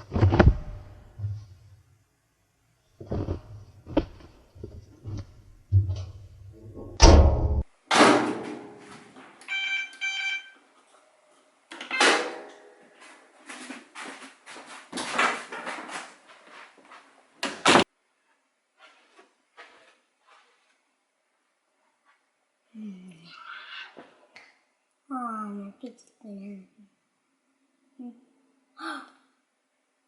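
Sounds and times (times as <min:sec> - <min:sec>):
short electronic beeps: 0:09.5 - 0:10.6.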